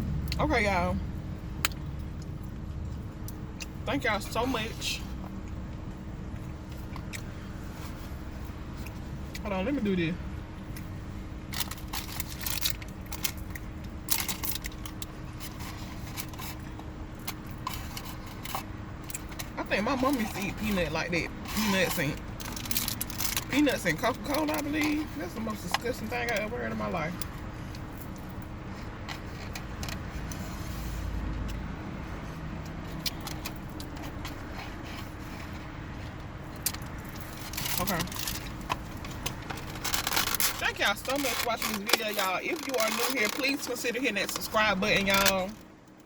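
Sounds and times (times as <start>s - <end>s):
low steady rumble: 0.0s - 46.0s
crackling rustle: 11.5s - 20.8s, 21.4s - 26.4s, 27.1s - 46.0s.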